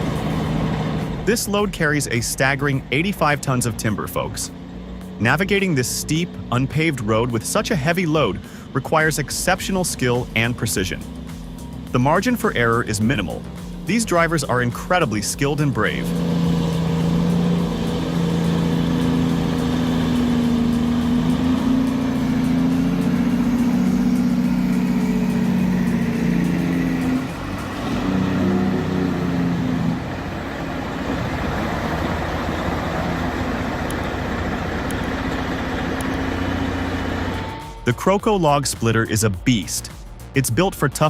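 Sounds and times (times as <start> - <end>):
diesel truck engine droning: 0.0 - 41.0.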